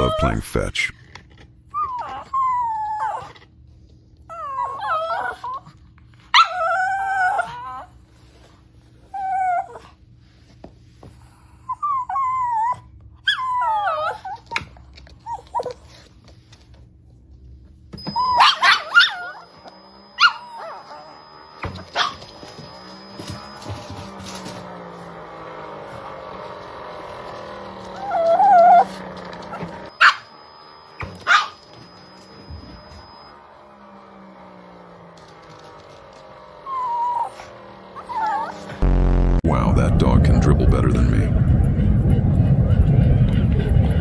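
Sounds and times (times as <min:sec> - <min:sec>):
dog whining and howling: 0:01.7 - 0:03.6, 0:04.2 - 0:08.4, 0:09.0 - 0:10.0, 0:11.6 - 0:16.1, 0:18.0 - 0:38.8
steady high tone: 0:29.0 - 0:33.4, 0:38.8 - 0:44.0.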